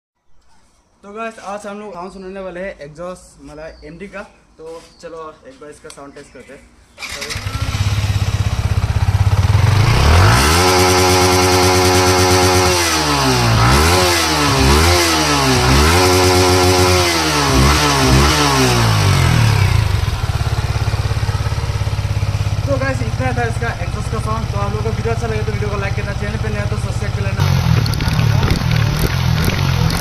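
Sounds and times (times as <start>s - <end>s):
motorcycle engine idling and revving: 7.0s - 30.0s.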